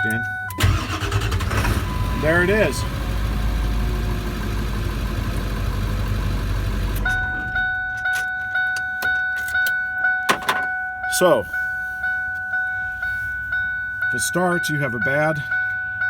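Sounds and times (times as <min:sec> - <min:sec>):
dashboard warning chime dinging: 0:00.0 - 0:04.5, 0:05.4 - 0:16.0
diesel engine idling: 0:00.6 - 0:08.1.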